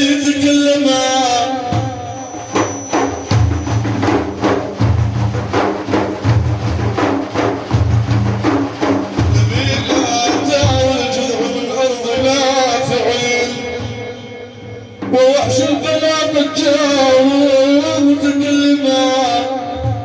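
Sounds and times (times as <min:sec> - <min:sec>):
drum rhythm: 0:01.6 - 0:16.4
deep low drum beat: 0:02.6 - 0:14.2.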